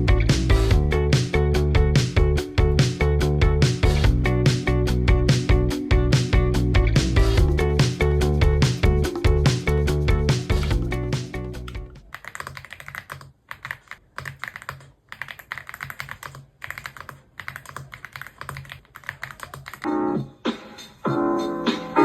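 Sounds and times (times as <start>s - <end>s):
mechanical keyboard typing: 11.6s - 19.9s.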